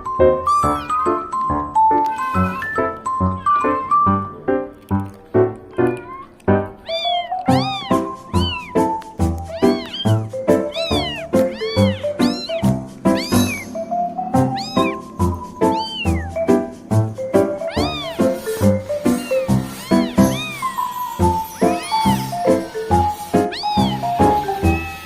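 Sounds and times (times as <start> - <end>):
cat meowing: 0.4 - 1.2, 2.0 - 4.3, 5.6 - 16.6, 17.4 - 25.0
music with low beat: 7.5 - 20.5.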